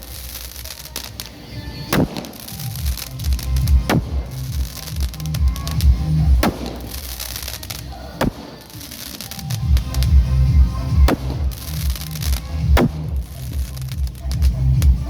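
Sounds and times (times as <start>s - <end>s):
firecrackers banging: 0.0s - 15.0s
music with heavy bass beat: 1.9s - 7.6s, 9.6s - 15.0s.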